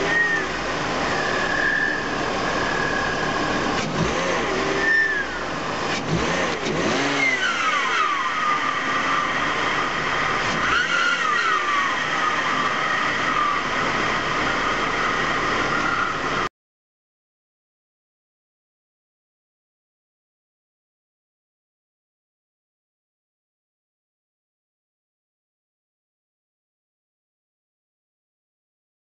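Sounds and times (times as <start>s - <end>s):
intake air whine: 0.0s - 6.8s
car engine revving: 0.0s - 16.5s.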